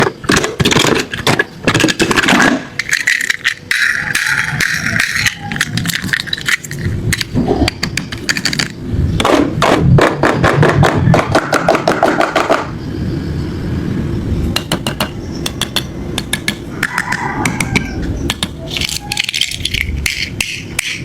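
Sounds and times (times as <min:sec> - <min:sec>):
toy cars clattering: 0:00.0 - 0:08.8, 0:15.6 - 0:21.0
steady rushing sound: 0:02.6 - 0:18.7.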